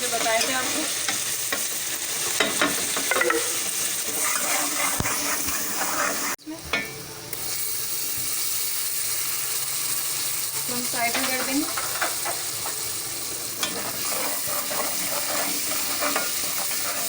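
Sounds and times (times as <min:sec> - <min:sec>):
spices sizzling in oil: 0:00.0 - 0:17.0
spoon stirring and scraping: 0:02.4 - 0:06.4, 0:13.6 - 0:17.0.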